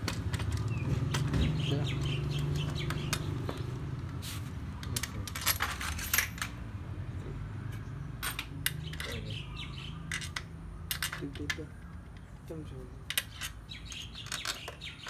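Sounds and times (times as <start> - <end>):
metal parts and tools clinking: 0.0 - 1.4, 4.8 - 6.6, 7.7 - 9.2, 10.0 - 12.3, 13.0 - 15.0.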